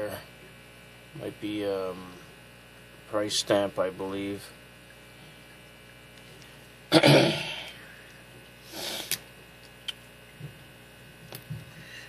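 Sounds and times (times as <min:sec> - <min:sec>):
person breathing out: 0:08.7 - 0:09.2.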